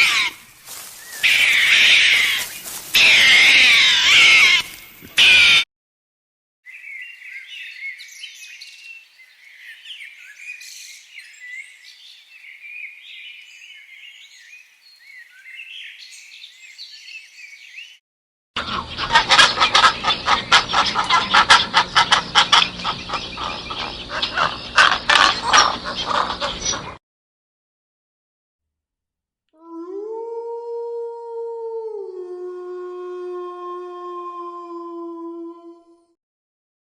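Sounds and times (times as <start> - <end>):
small birds chirping: 0.0 - 5.1, 6.7 - 18.0, 18.6 - 27.0
rapid clicks and calls: 18.6 - 27.0.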